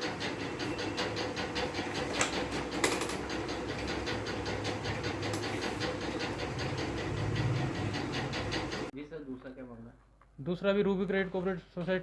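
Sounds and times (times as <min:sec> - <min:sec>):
fast even clatter: 0:00.0 - 0:08.9
machinery humming: 0:00.0 - 0:08.9.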